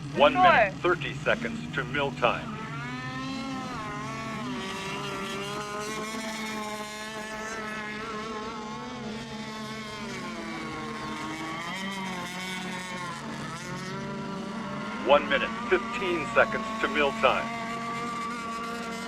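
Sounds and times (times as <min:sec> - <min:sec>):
model boat engines whining: 0:00.0 - 0:08.5, 0:14.6 - 0:17.6.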